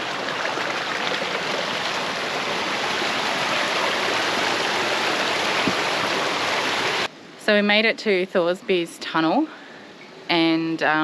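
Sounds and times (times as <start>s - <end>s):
creek water rushing: 0.0s - 7.1s.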